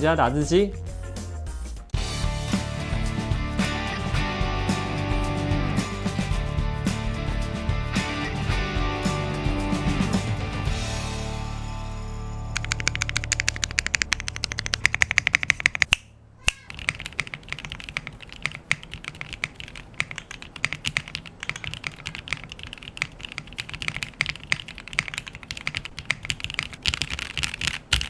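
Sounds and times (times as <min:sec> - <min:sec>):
mechanical keyboard typing: 0:12.5 - 0:16.0, 0:16.6 - 0:28.0.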